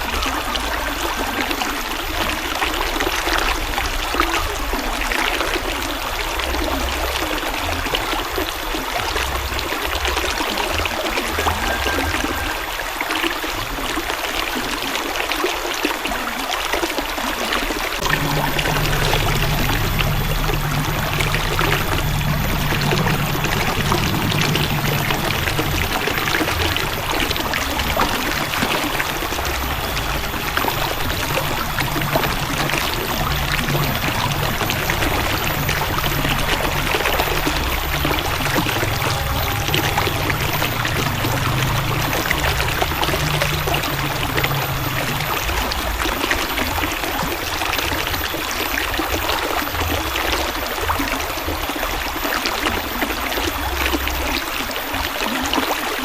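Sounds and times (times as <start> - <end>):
river water rushing: 0.0 - 56.0
low rumble: 18.0 - 48.4.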